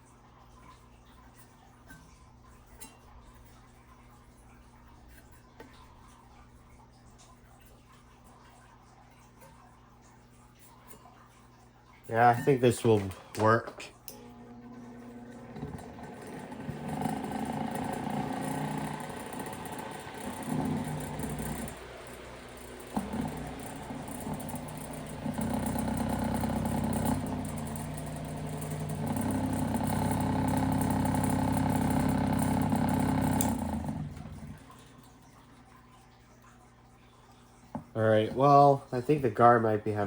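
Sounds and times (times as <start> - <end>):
electric fan humming and rattling: 0.0 - 40.0.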